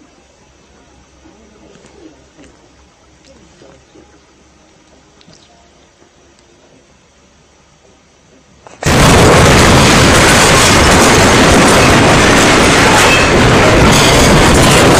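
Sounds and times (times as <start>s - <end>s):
loud distorted noise blast: 8.8s - 14.9s.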